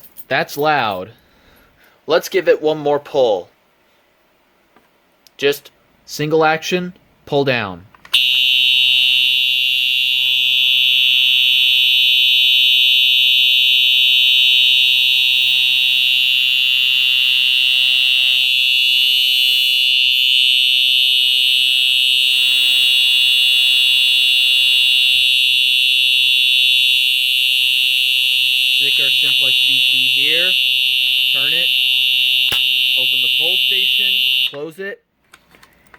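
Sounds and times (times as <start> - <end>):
fire alarm horn steady tone: 8.2 - 34.6.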